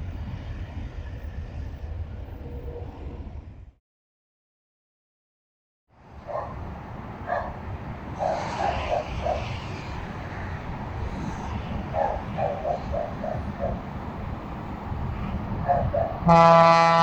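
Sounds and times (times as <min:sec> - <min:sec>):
dog barking: 0:06.3 - 0:06.6, 0:07.3 - 0:07.6, 0:11.9 - 0:13.8, 0:15.6 - 0:16.2.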